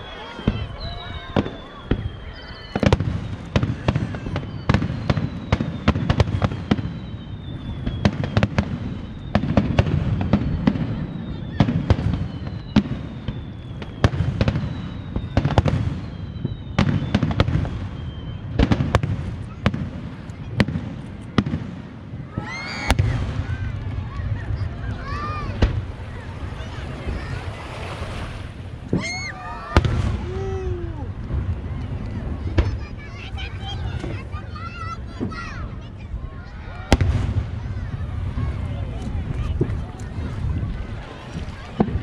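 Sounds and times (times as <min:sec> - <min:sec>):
falling firework whistles: 0:00.0 - 0:35.8
firework bangs: 0:00.0 - 0:42.0
low murmur: 0:18.7 - 0:42.0.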